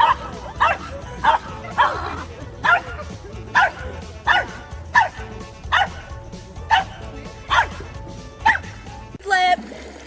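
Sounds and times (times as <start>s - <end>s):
dog barking: 0.0s - 8.8s.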